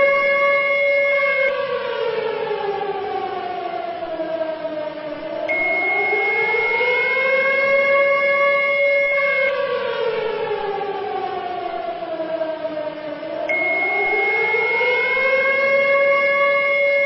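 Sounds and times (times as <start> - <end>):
air-raid siren wailing: 0.0 - 17.0
steady high-pitched tone: 5.4 - 7.5, 13.2 - 15.2.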